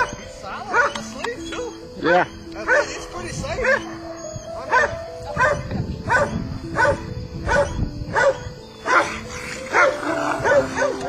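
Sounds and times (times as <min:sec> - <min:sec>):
dog barking aggressively: 0:02.7 - 0:03.0, 0:04.7 - 0:11.0.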